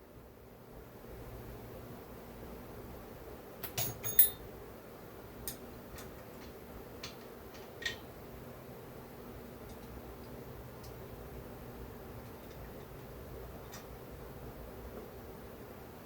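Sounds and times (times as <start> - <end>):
metal parts clinking on workbench: 3.7 - 4.4.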